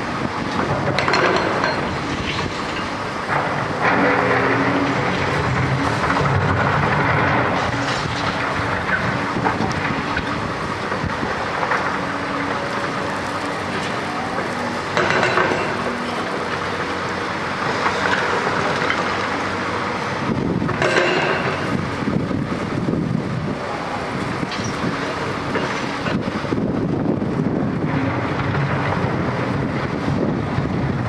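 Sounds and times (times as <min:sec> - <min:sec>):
excavator running under load: 0:00.0 - 0:31.0
concrete rubble clanks and scrapes: 0:00.6 - 0:16.8, 0:20.6 - 0:21.9, 0:24.4 - 0:26.3.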